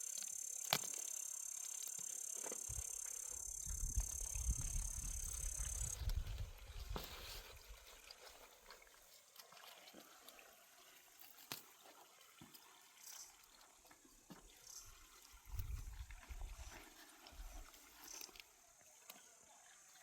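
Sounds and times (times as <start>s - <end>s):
small sharp clicks: 0.0s - 2.7s
faint water trickle: 0.0s - 20.0s.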